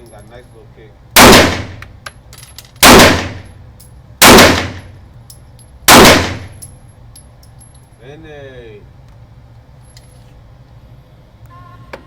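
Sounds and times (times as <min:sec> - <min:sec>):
handgun shots echoing: 0:01.2 - 0:01.9, 0:02.8 - 0:03.5, 0:04.2 - 0:04.9, 0:05.9 - 0:06.6.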